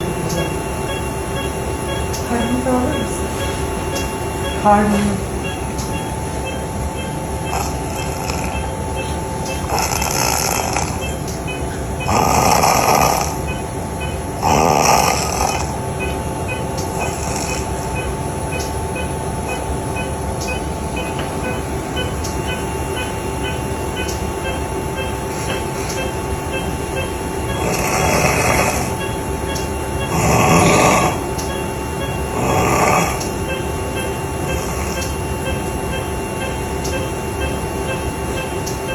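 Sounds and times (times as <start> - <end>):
steady hum: 0.0 - 38.9
person snoring: 7.4 - 8.8, 9.6 - 11.1, 12.0 - 13.5, 14.4 - 16.1, 17.0 - 17.8, 27.4 - 29.0, 30.0 - 31.3, 32.3 - 33.3.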